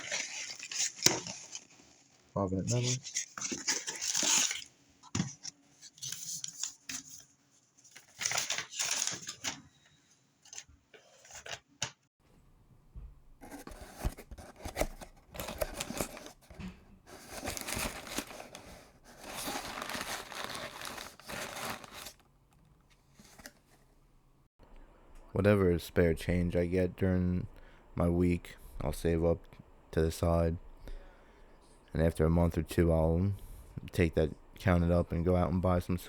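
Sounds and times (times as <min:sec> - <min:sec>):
packing material crinkling: 0:17.1 - 0:22.2.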